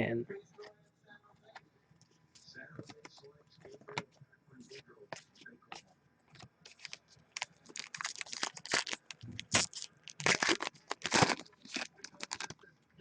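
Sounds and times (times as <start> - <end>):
wrappers crinkling and tearing: 6.7 - 12.6.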